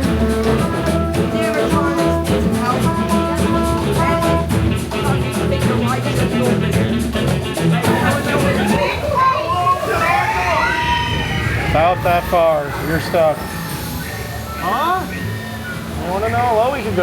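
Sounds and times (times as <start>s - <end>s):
upbeat jazz band music: 0.0s - 9.3s.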